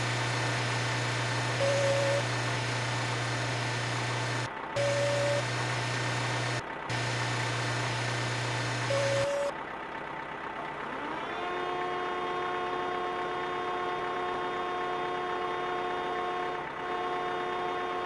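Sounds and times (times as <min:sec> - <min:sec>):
steady hum: 0:00.0 - 0:09.5
truck engine rumbling: 0:00.0 - 0:18.0
short beep: 0:04.8 - 0:05.4.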